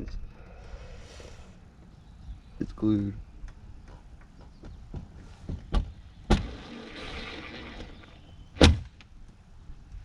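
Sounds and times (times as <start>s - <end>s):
loud thump: 8.6s - 8.9s.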